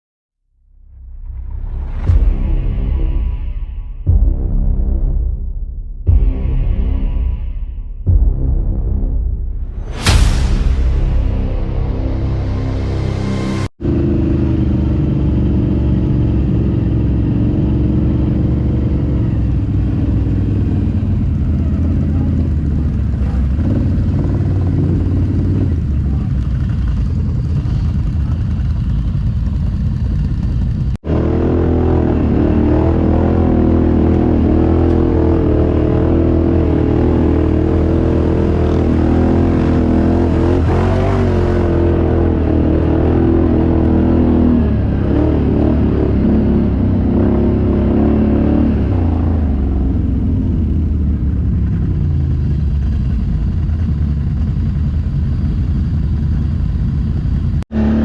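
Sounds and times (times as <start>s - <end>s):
atv engine running: 13.8s - 58.0s.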